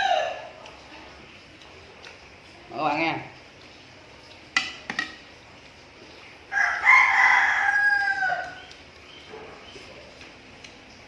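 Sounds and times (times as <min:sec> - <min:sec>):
rooster crowing: 0:00.0 - 0:00.5, 0:06.5 - 0:08.7.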